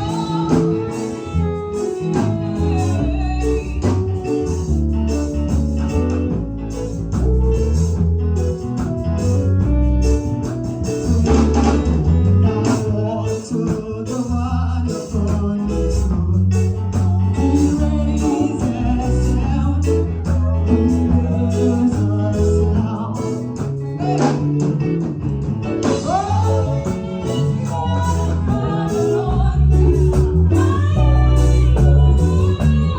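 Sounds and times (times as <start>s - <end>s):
people singing: 0.0s - 4.7s, 11.0s - 24.6s, 25.8s - 32.9s
gospel worship band music: 0.0s - 32.9s
strong bass line: 0.0s - 32.9s.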